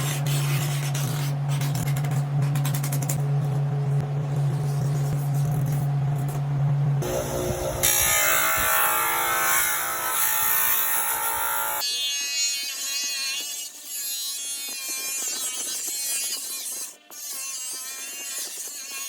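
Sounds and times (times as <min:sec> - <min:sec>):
electric tool motor buzzing: 0:07.0 - 0:19.0.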